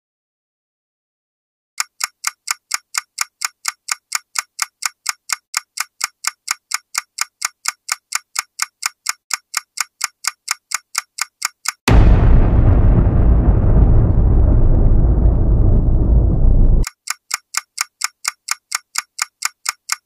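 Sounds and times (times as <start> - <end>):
clock ticking: 1.8 - 12.0, 16.8 - 20.0.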